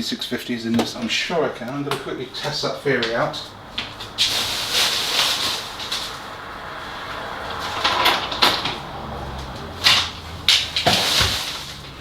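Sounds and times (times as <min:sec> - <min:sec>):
small hard objects being handled: 0:02.4 - 0:06.5, 0:09.8 - 0:12.0.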